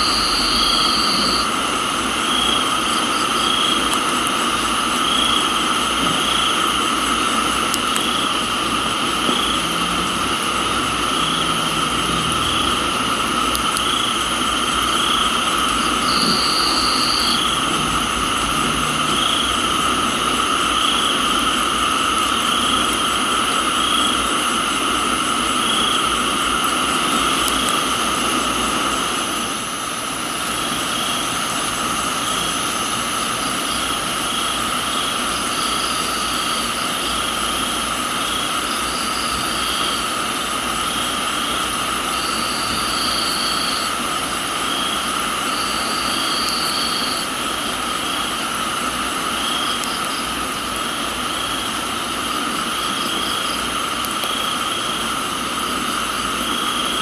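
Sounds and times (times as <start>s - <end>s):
high buzzing insect call: 0.0s - 57.0s
insects chirring: 0.0s - 57.0s
rain hissing: 0.0s - 57.0s.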